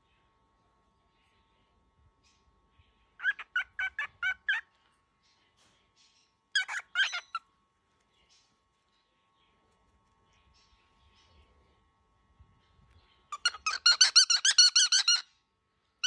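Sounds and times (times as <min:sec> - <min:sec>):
cockatiel harsh calls: 0:03.2 - 0:04.7, 0:06.6 - 0:07.4, 0:13.3 - 0:15.3.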